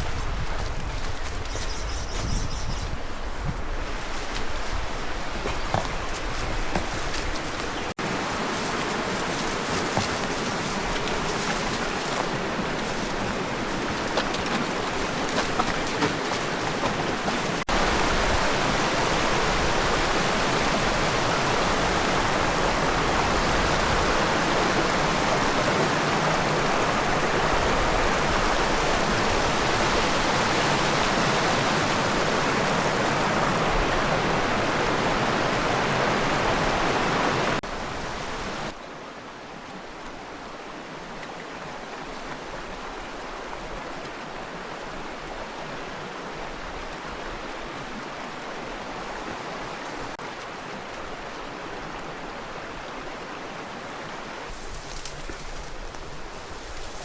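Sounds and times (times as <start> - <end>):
river water rushing: 3.7 - 57.0
small water splashes: 4.0 - 18.4.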